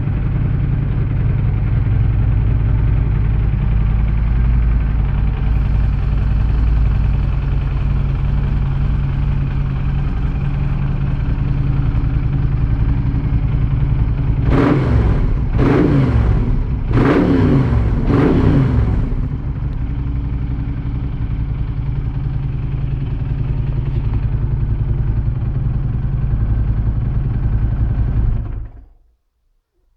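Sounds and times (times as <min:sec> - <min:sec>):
motorcycle engine idling: 0:00.0 - 0:29.0.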